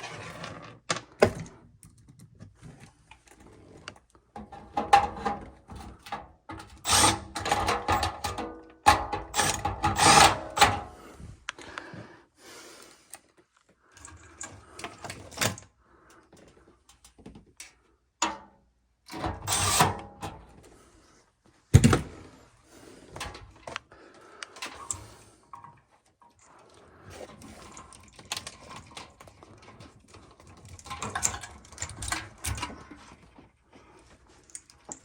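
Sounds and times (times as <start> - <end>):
hand tools clattering and scraping: 4.4 - 11.1.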